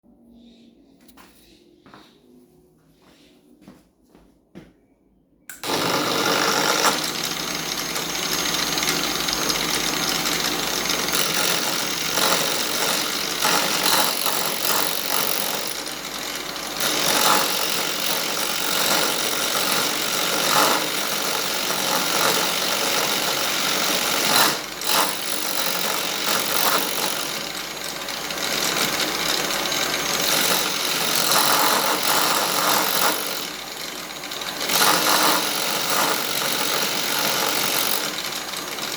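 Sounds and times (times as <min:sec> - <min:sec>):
bit cutting sanding disc: 0:05.5 - 0:20.9
angle grinder running: 0:05.5 - 0:38.9.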